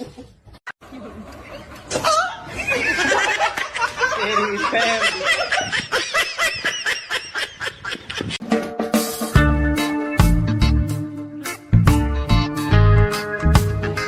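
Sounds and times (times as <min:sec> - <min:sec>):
people laughing: 0:00.0 - 0:08.4
music: 0:08.4 - 0:14.0.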